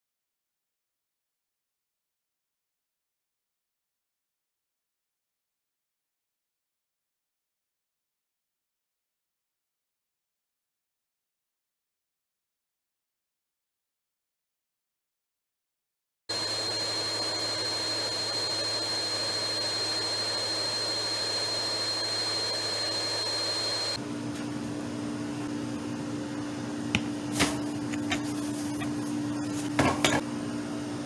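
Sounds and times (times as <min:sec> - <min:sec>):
vacuum cleaner running: 0:16.3 - 0:31.0.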